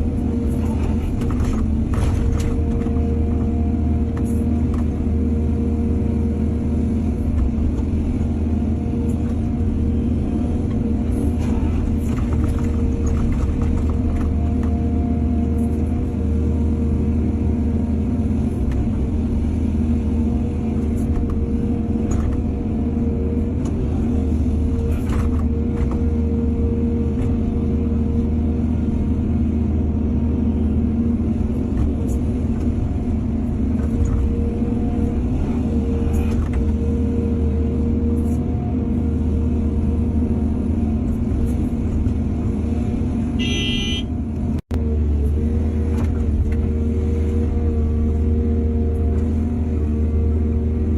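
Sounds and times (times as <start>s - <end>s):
earthmoving machinery diesel engines: 0.0s - 50.9s.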